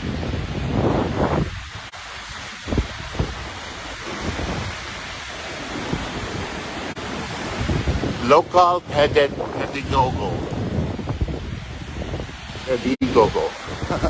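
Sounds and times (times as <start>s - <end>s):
ocean surf: 0.0s - 14.0s
wind buffeting microphone: 0.0s - 14.0s
low bumps from gusts: 2.6s - 8.2s, 8.8s - 12.7s.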